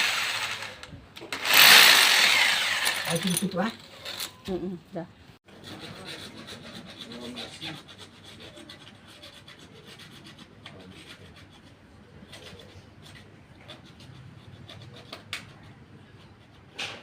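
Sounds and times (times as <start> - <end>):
hands scraping and rubbing fitting: 5.5 - 17.0.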